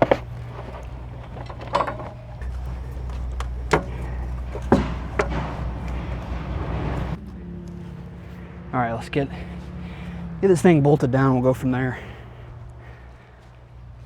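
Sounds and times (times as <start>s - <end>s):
metal knocks and clunks: 0.0s - 7.2s
steady low hum: 0.0s - 7.2s.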